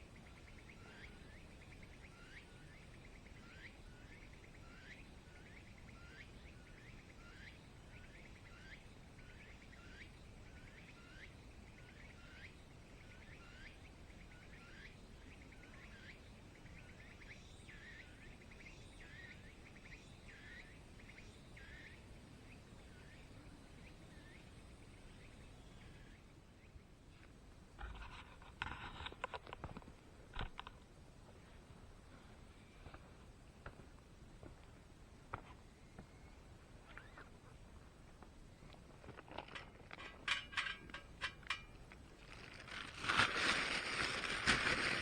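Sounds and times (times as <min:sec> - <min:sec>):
bird chirping: 0:00.0 - 0:26.8, 0:35.7 - 0:37.4
outdoor background hiss: 0:00.0 - 0:45.0.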